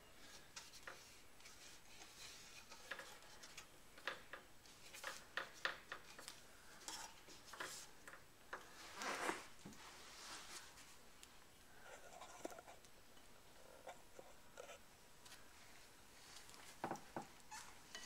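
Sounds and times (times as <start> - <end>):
small clicks and taps: 2.7 - 6.4.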